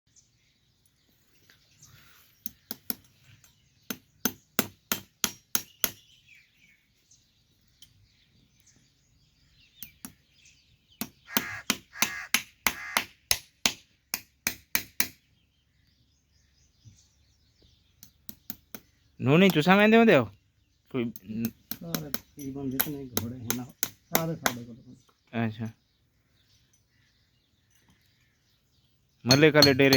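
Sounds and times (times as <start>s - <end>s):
hammer striking metal: 29.3s - 29.9s.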